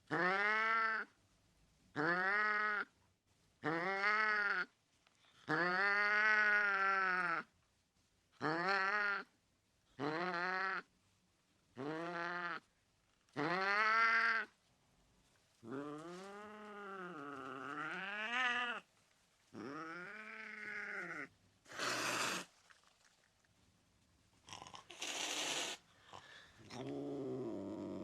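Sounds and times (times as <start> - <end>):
cat hissing: 19.6 - 22.6, 24.6 - 26.9.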